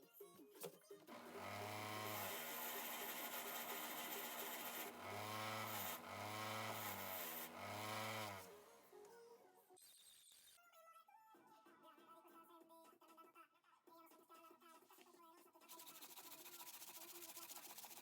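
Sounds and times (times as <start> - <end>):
electric power tool sanding: 1.1 - 9.1.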